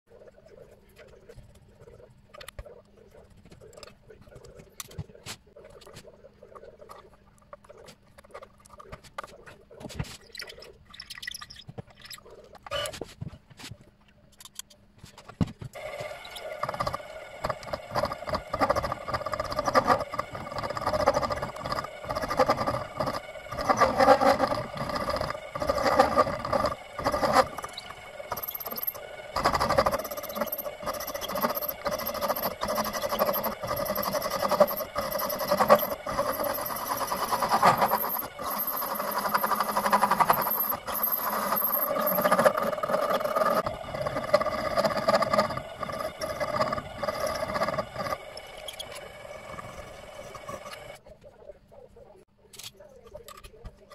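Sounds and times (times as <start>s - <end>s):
machine tool squealing cutting metal: 16.1s - 49.6s.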